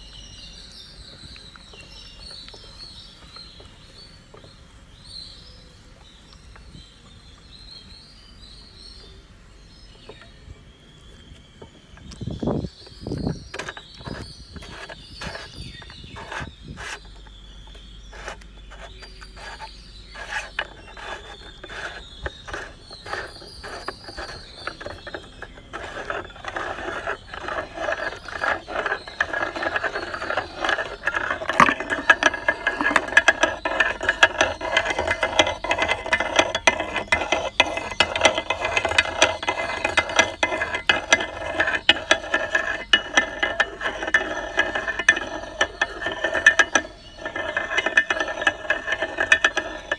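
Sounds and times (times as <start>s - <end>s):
faint high squeak: 11.1s - 49.9s
meat grinder crackling grind: 20.2s - 49.9s.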